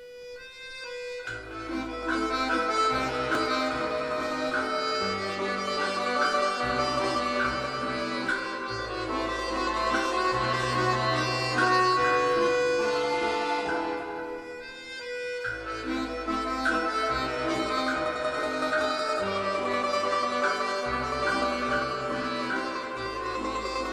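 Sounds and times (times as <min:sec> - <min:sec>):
instrumental background music: 0:00.0 - 0:23.9.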